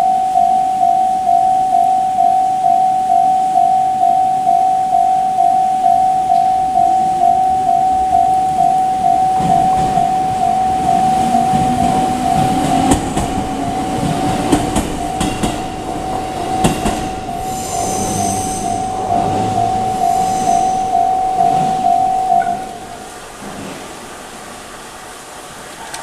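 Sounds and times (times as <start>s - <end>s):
level crossing alarm ringing: 0.0s - 23.4s
train wheels squealing: 8.9s - 23.1s
train wheels clicking over rails: 9.0s - 25.1s.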